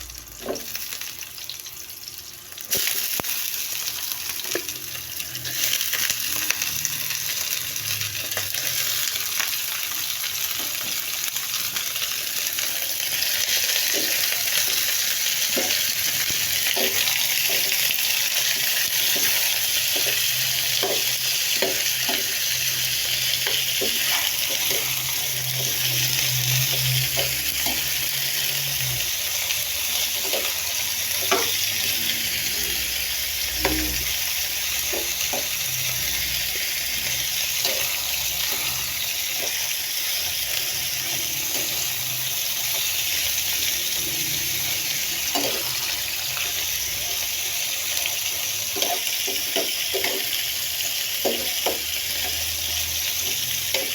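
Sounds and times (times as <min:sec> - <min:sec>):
food sizzling in hot oil: 0:00.0 - 0:53.9
utensil stirring and knocking pan: 0:13.1 - 0:28.7, 0:29.3 - 0:32.4, 0:33.0 - 0:45.9, 0:48.8 - 0:50.4, 0:51.1 - 0:53.9.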